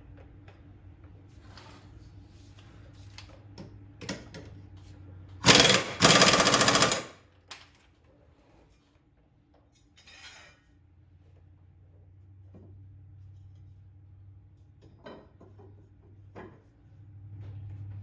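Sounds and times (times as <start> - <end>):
impact wrench hammering: 5.4 - 7.2.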